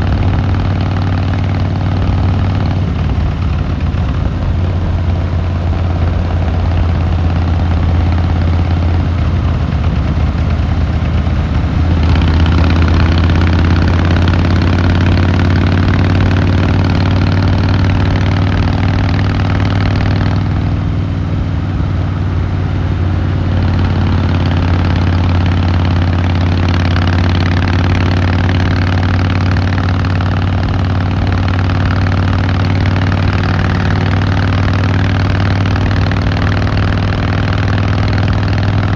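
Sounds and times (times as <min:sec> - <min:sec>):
motorcycle engine and exhaust: 0:00.0 - 0:38.9.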